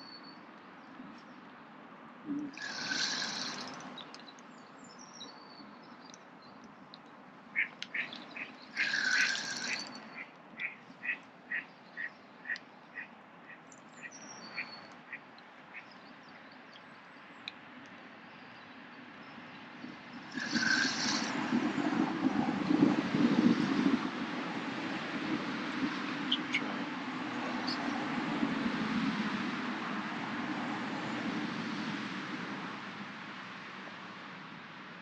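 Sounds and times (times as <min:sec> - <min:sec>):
duck quacking: 0:07.6 - 0:11.6.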